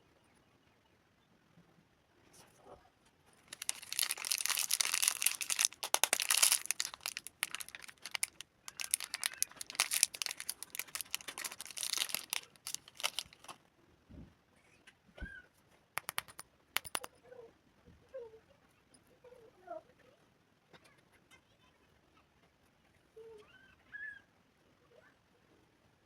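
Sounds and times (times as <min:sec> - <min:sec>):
plastic candy wrapper crinkling: 0:03.4 - 0:13.6, 0:16.0 - 0:17.1.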